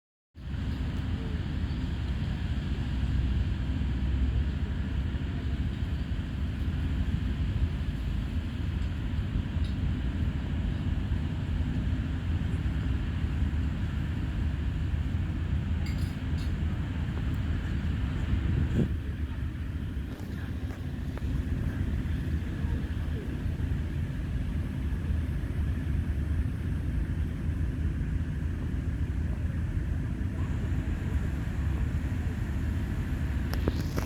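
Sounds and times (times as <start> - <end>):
low rumbling background noise: 0.4 - 34.0.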